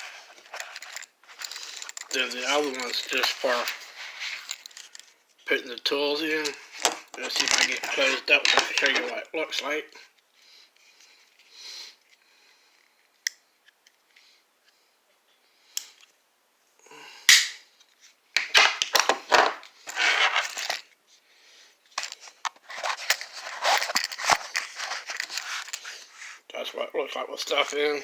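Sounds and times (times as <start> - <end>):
vinyl pouch rustling and scraping: 0.0 - 5.5, 6.3 - 9.2, 18.0 - 21.0, 21.9 - 26.5.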